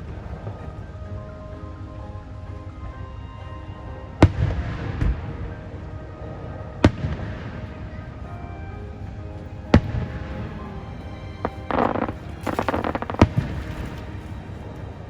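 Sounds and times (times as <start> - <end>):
crackle and rumble: 0.0 - 15.0
fireworks shells bursting: 11.4 - 14.8.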